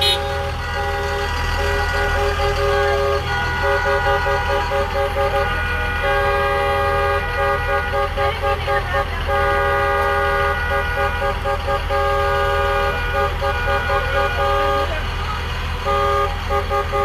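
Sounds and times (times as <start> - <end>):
short horn toots: 0.0 - 15.0, 15.8 - 17.0
car horns honking: 0.0 - 17.0
low traffic rumble: 0.0 - 17.0.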